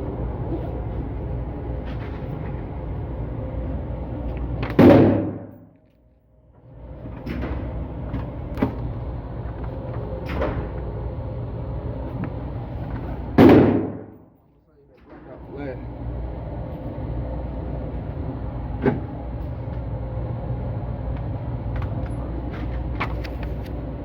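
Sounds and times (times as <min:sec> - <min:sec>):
steady low rumble: 0:00.0 - 0:24.0
loud sharp bang: 0:04.7 - 0:05.7, 0:13.4 - 0:14.3.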